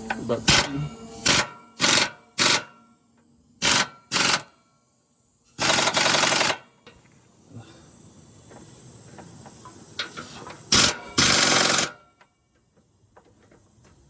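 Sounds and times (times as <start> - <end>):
air impact wrench hammering: 0.0 - 2.9, 3.6 - 4.6, 5.6 - 6.9, 10.0 - 12.2.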